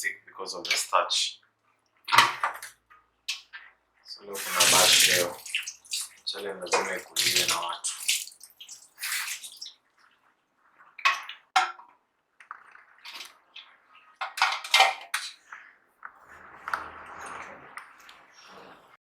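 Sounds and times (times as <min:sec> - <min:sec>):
water: 0:00.0 - 0:19.0
pots and dishes clattering: 0:02.1 - 0:02.6, 0:14.2 - 0:15.3.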